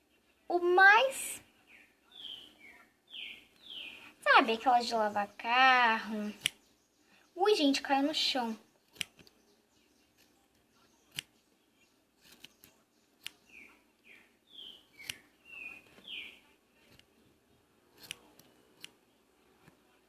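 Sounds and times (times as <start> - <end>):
scissors snipping: 6.2 - 6.6, 8.9 - 9.4, 11.1 - 11.4, 12.2 - 13.6, 15.0 - 15.3, 17.9 - 19.0.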